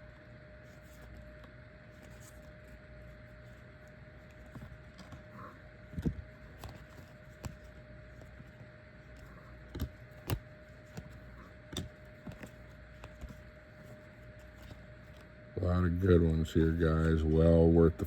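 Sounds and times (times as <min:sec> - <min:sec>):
faint steady hum: 0:00.0 - 0:18.0
cards tapping and clicking: 0:04.2 - 0:15.3.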